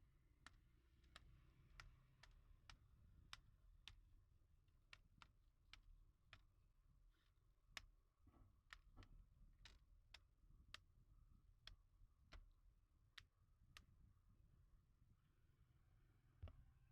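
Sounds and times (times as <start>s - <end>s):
faint sharp clicks: 0.0s - 4.0s, 4.8s - 10.9s.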